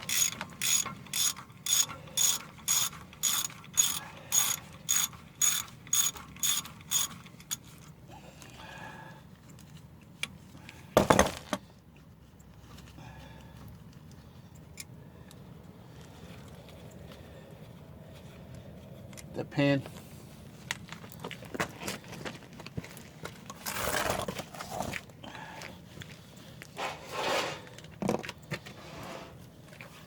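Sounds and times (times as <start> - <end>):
ratchet wrench clicking: 0.0 - 7.6.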